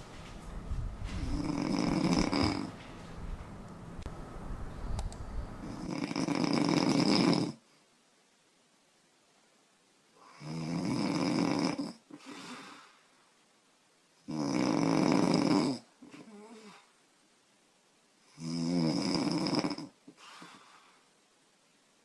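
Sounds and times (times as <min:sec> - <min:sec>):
woman snoring: 0:01.4 - 0:02.7.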